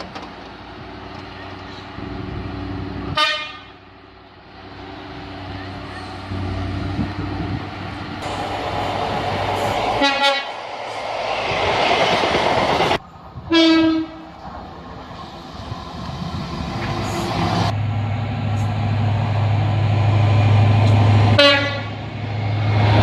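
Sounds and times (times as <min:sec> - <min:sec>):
train rumbling past: 0:00.0 - 0:23.0
train horn blasts: 0:03.1 - 0:03.8, 0:10.0 - 0:10.6, 0:13.5 - 0:14.2, 0:21.4 - 0:22.0.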